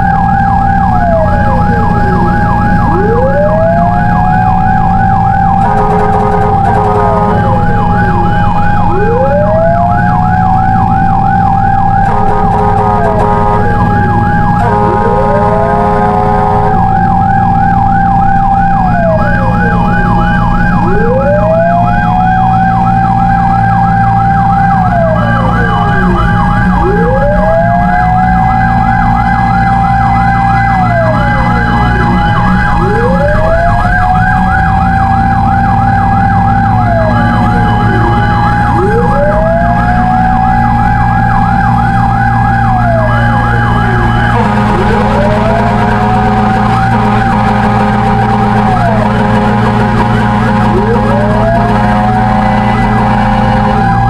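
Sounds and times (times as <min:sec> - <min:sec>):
fast yelp siren: 0:00.0 - 0:54.0
fire truck engine drone: 0:00.0 - 0:54.0
fire truck horn: 0:00.0 - 0:54.0
wailing siren: 0:00.0 - 0:54.0.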